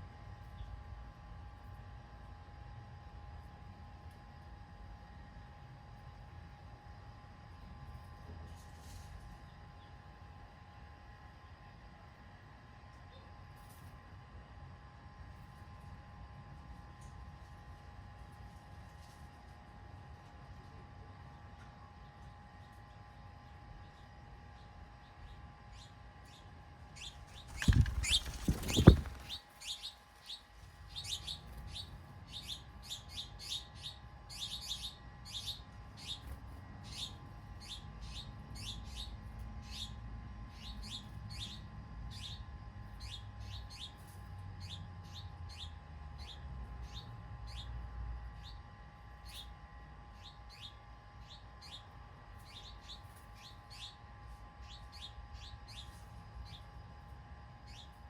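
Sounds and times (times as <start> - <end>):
bird chirping: 27.0 - 29.9.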